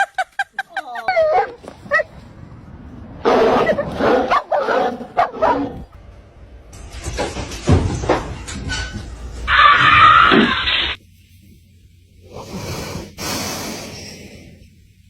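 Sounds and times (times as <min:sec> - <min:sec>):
dog barking and yipping: 0:01.2 - 0:02.1, 0:03.3 - 0:05.9.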